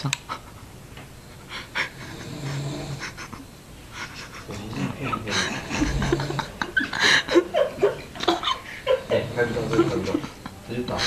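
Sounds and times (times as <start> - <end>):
man snoring: 2.0 - 3.1, 5.6 - 6.6.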